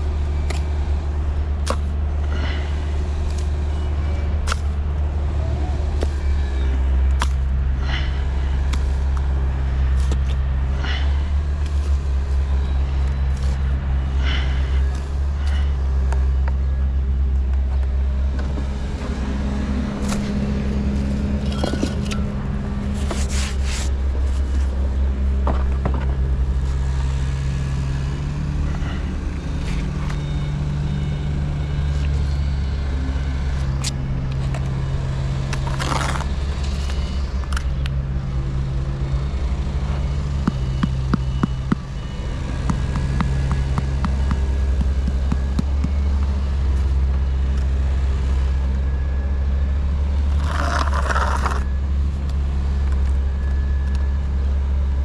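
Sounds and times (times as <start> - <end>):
motor droning: 0.0 - 54.1
clicks and scrapes: 50.4 - 51.7.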